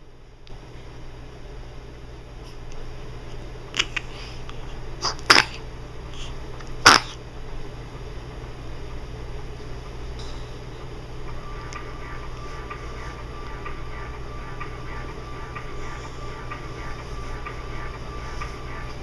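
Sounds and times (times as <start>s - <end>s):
baby catching breath: 3.8s - 6.4s
baby sneezing: 5.0s - 5.6s, 6.2s - 7.2s.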